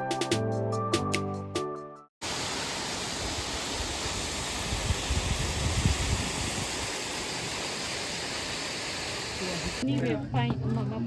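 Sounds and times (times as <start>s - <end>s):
rush of falling water: 2.2s - 9.8s.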